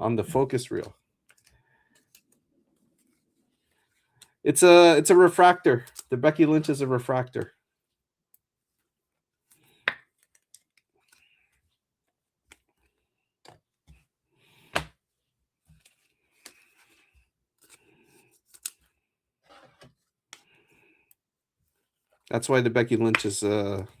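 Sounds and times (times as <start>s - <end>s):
cards sliding: 15.8s - 18.9s.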